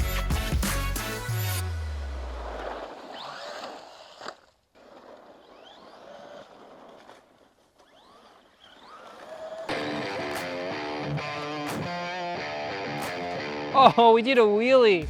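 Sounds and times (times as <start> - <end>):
short rising motor whines: 5.0 - 7.2, 7.8 - 9.7.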